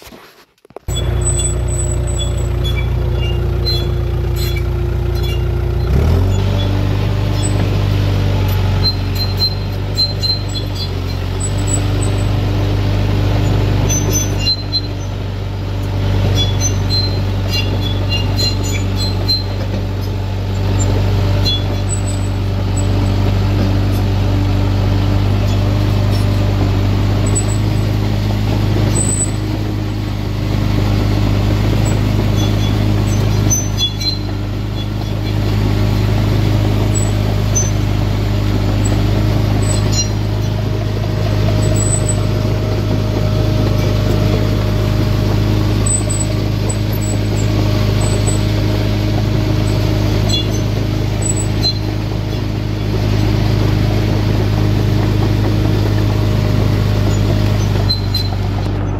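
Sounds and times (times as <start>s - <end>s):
engine running: 0.6s - 58.9s.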